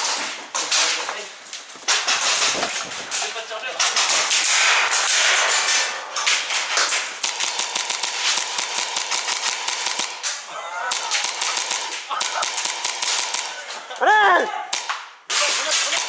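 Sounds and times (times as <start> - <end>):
airsoft gun shots cracking: 1.9 - 13.9, 14.7 - 16.0.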